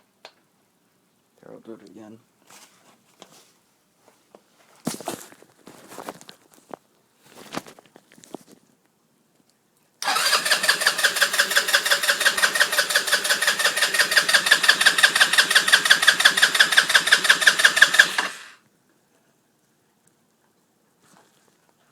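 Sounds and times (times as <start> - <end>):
scooter electric starter cranking: 10.0 - 18.6.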